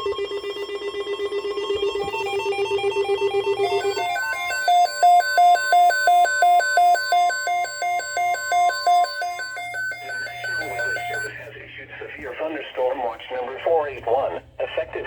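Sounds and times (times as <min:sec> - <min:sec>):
electronic alarm beeping: 0:00.0 - 0:11.4
steady warning alarm tone: 0:00.0 - 0:11.5.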